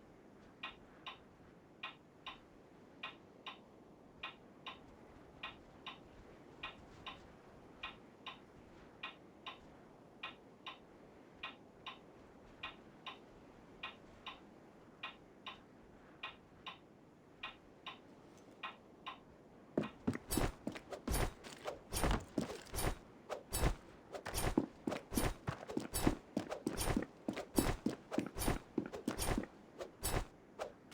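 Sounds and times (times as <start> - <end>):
soft paired ticks: 3.0 - 3.6, 7.8 - 10.8, 11.4 - 13.2, 13.8 - 14.4, 15.0 - 19.2.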